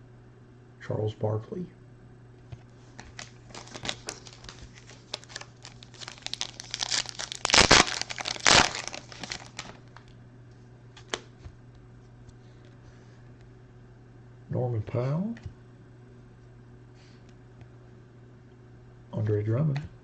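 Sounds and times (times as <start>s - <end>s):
wrapper crinkling and tearing: 3.0s - 10.1s.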